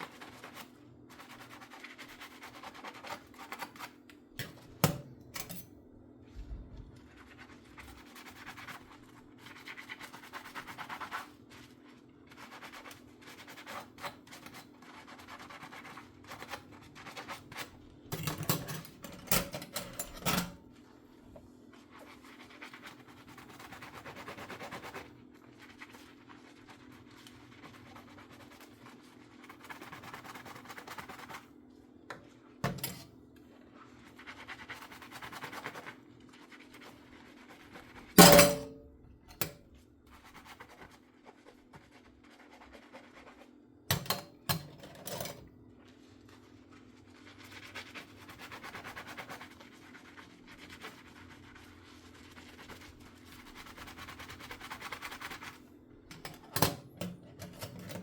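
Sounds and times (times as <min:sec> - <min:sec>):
sponge scrubbing dishes: 0:00.0 - 0:04.8, 0:06.2 - 0:58.0
dishware clinking and knocking: 0:38.2 - 0:38.8.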